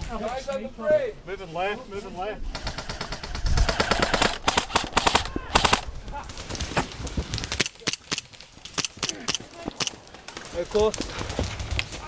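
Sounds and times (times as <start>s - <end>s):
airsoft guns firing: 2.6s - 6.1s.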